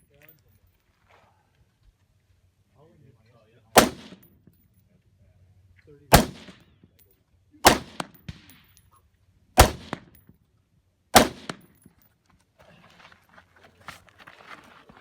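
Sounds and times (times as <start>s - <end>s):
rifle shots with echo: 3.8s - 4.3s, 6.1s - 6.7s, 7.6s - 8.8s, 9.6s - 10.2s, 11.2s - 11.8s.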